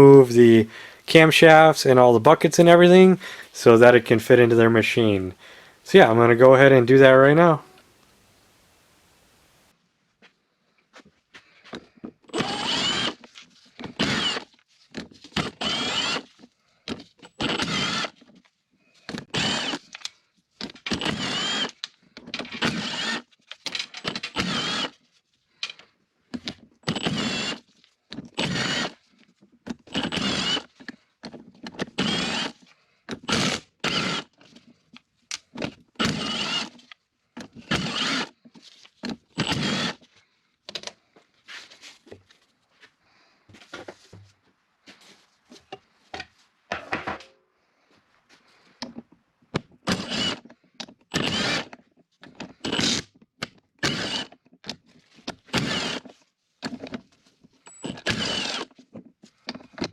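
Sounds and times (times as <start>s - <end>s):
handheld power tool bursts: 12.3s - 13.3s, 13.9s - 14.6s, 15.4s - 16.3s, 17.2s - 18.2s, 19.2s - 20.0s, 20.9s - 21.8s, 22.4s - 23.3s, 23.9s - 25.0s, 26.9s - 27.6s, 28.4s - 29.0s, 29.9s - 30.7s, 31.8s - 34.4s, 36.0s - 36.8s, 37.6s - 38.4s, 39.4s - 40.1s, 49.8s - 50.5s, 51.1s - 51.8s, 52.6s - 53.1s, 53.8s - 54.4s, 55.5s - 56.1s, 57.7s - 58.8s.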